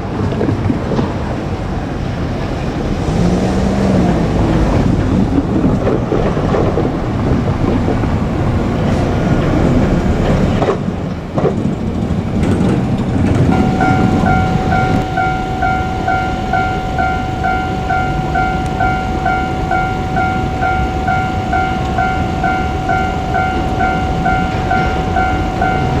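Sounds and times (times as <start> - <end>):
train wheels rushing on rail: 0.0 - 26.0
wheels clacking over rail joints: 0.0 - 26.0
level crossing alarm tones: 13.5 - 26.0.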